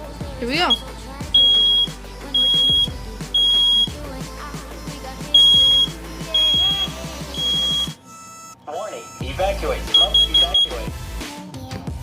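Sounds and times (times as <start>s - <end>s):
smoke alarm beeping: 1.4s - 4.0s, 5.3s - 10.9s.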